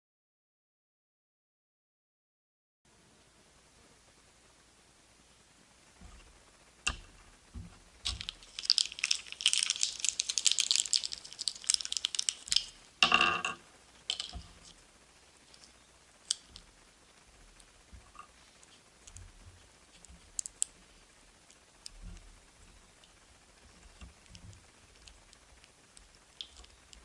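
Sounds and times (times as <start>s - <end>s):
wrapper crinkling and tearing: 8.0s - 13.0s, 14.1s - 14.8s.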